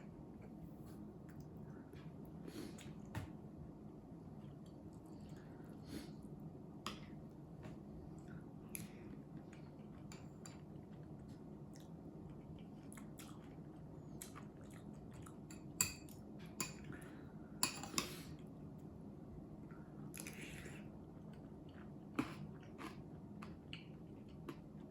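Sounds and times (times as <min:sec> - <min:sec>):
faint low hum: 0:00.0 - 0:24.9
quiet chewing: 0:08.1 - 0:15.5, 0:19.7 - 0:24.9.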